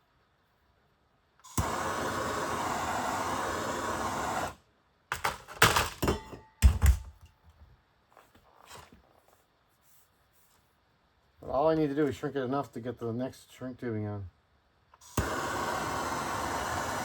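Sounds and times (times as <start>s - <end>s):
gas torch flame hissing: 1.4s - 5.3s, 15.0s - 17.0s
torch ignition click: 1.5s - 5.8s, 15.0s - 17.0s.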